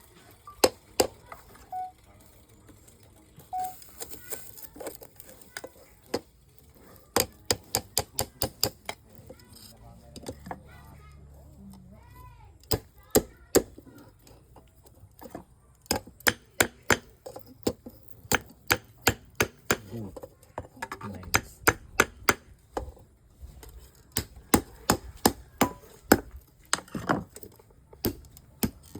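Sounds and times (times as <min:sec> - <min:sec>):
hammer striking iron on anvil: 0:24.6 - 0:26.2.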